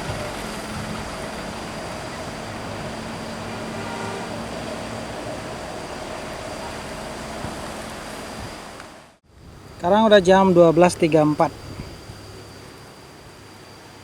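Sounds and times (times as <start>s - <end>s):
vehicle engine humming: 0.0s - 9.2s
road noise: 0.0s - 14.0s.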